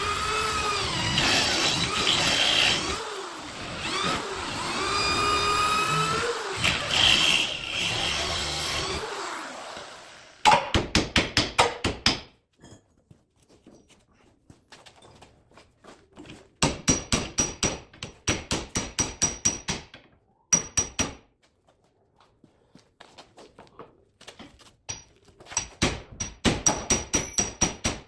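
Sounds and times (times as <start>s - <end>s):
hammer striking metal: 16.6s - 19.9s, 20.5s - 21.2s, 24.9s - 28.0s.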